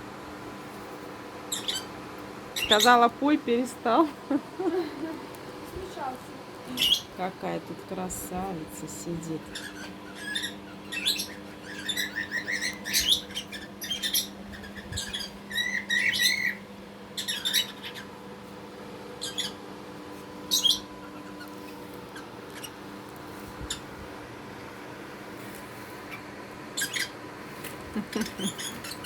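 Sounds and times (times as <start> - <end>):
steady low hum: 0.0 - 29.0
budgerigar chirping and chattering: 1.5 - 1.9, 2.6 - 3.1, 6.8 - 7.1, 9.2 - 16.6, 17.2 - 18.1, 19.2 - 19.6, 20.5 - 21.5, 26.8 - 27.2, 28.1 - 29.0.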